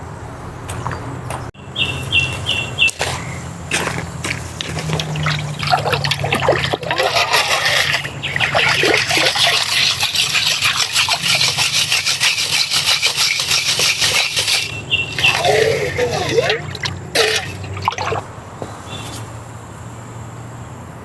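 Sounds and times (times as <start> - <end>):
water trickling and splashing: 3.7 - 18.4.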